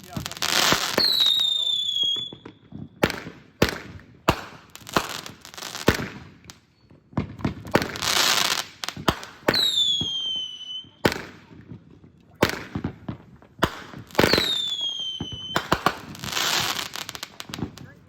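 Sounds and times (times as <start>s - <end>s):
firework bangs: 0.0s - 18.0s
firework crackling hiss: 7.6s - 10.5s, 13.7s - 17.9s.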